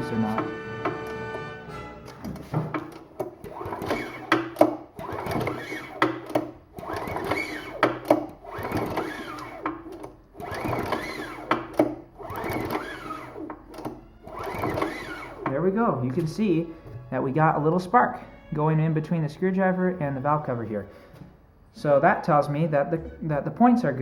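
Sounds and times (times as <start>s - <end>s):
small engine flywheel whirring rattle: 3.2s - 15.5s.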